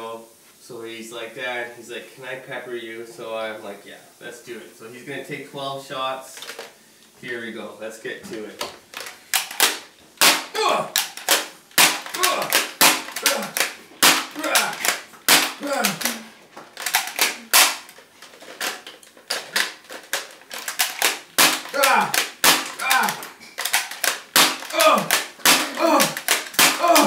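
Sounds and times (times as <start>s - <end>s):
toy blaster shots snapping: 9.0s - 18.0s, 18.6s - 27.0s
darts hitting a person: 9.6s - 16.3s, 21.0s - 23.4s, 24.0s - 27.0s
person yelping and grunting: 10.5s - 11.0s, 12.0s - 16.4s, 21.5s - 23.4s, 24.6s - 27.0s.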